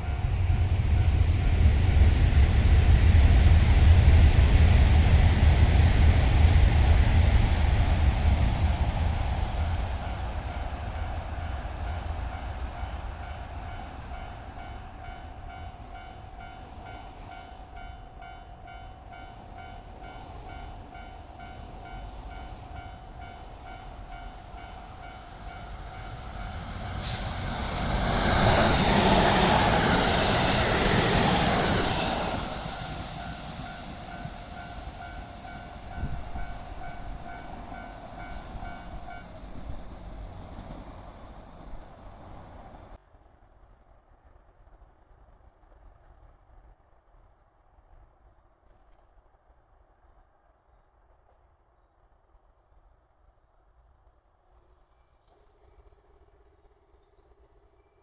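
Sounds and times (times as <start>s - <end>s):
train passing: 0.0s - 47.8s
level-crossing warning bell: 11.8s - 40.7s.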